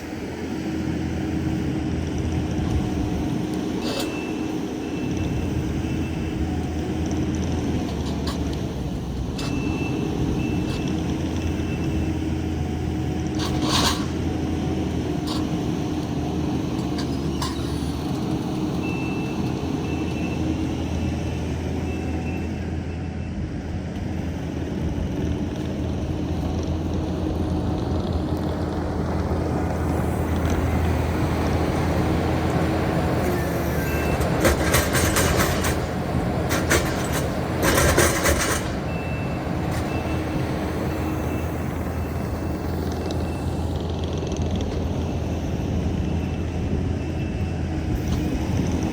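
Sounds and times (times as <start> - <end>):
diesel engine running: 0.0 - 48.9
reversing alarm beeping: 3.8 - 6.5, 9.4 - 12.3, 18.6 - 23.4, 33.1 - 35.9, 36.5 - 43.8, 45.0 - 48.5
metal clanks and rattles: 13.4 - 14.2, 34.2 - 40.0.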